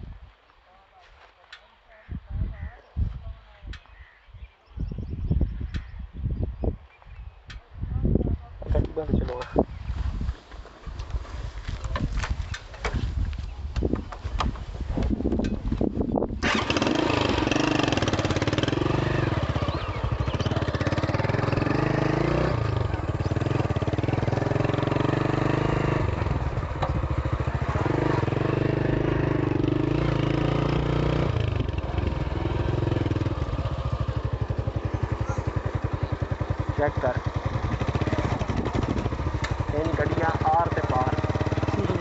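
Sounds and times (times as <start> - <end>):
motorcycle engine puttering: 10.6 - 42.0.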